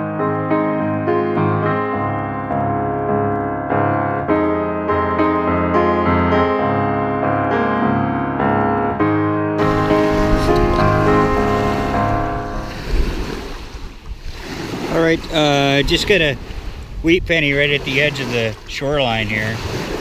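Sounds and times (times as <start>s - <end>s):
piano music: 0.0s - 13.8s
wind and surf rushing: 9.6s - 20.0s.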